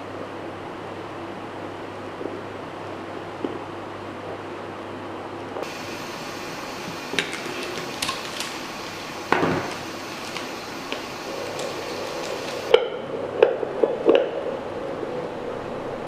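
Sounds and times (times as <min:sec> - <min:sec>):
loudspeaker hiss: 0:05.6 - 0:12.7.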